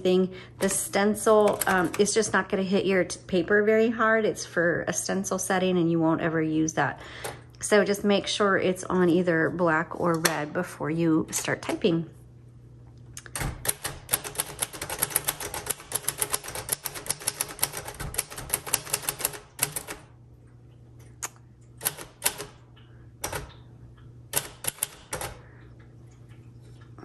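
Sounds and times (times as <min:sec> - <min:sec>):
manual typewriter key strikes: 0:01.4 - 0:02.1, 0:13.3 - 0:20.1, 0:21.8 - 0:22.6, 0:24.3 - 0:25.4.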